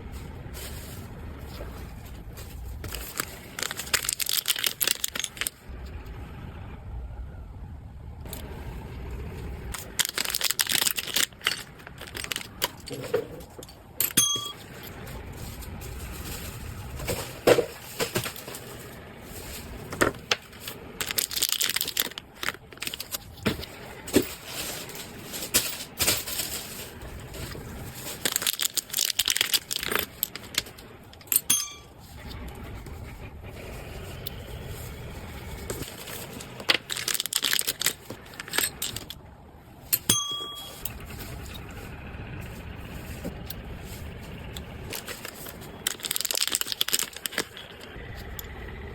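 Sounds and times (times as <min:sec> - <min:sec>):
packaging crinkling and tearing: 0:02.4 - 0:05.6, 0:09.7 - 0:13.0, 0:15.2 - 0:23.4, 0:26.2 - 0:30.8, 0:35.6 - 0:39.2, 0:43.9 - 0:47.9.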